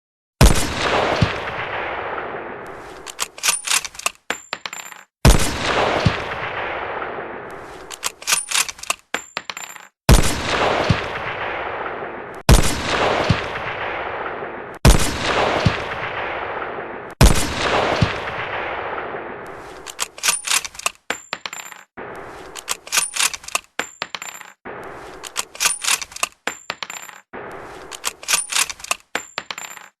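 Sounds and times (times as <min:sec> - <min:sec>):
shotgun shots echoing: 0:00.4 - 0:04.0, 0:05.2 - 0:08.7, 0:10.1 - 0:20.7
sharp metallic clicks: 0:03.0 - 0:05.1, 0:07.9 - 0:10.0, 0:19.8 - 0:21.9, 0:22.5 - 0:24.6, 0:25.2 - 0:30.0.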